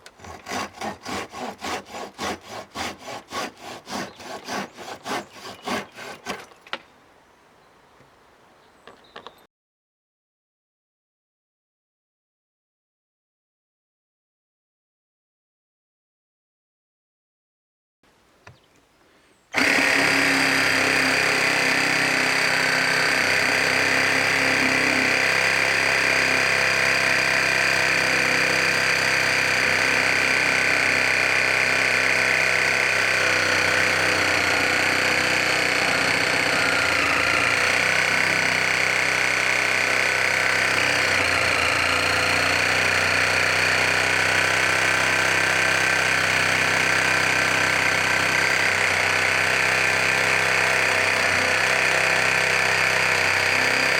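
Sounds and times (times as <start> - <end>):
reciprocating saw cutting wood: 0.0 - 6.8, 19.6 - 53.9.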